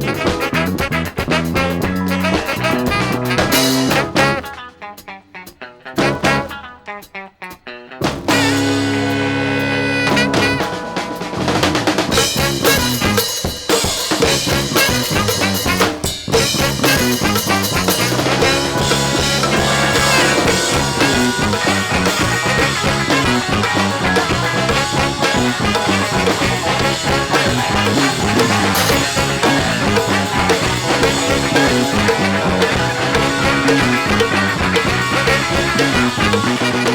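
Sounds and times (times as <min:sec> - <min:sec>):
live rock band playing: 0:00.0 - 0:36.9
drum hits: 0:10.0 - 0:36.9.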